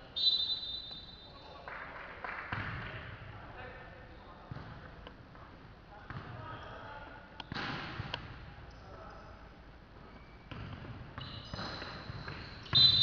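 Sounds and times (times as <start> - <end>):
basketball bouncing: 2.5 - 2.8, 10.5 - 13.0.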